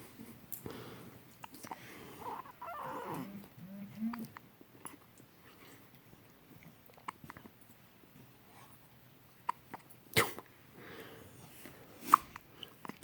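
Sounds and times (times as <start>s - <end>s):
baby hiccupping: 2.2s - 5.0s, 9.4s - 10.4s.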